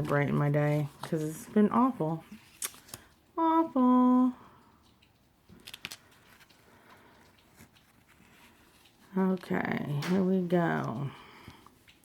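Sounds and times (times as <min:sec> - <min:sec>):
faint clicks: 0:03.8 - 0:10.2.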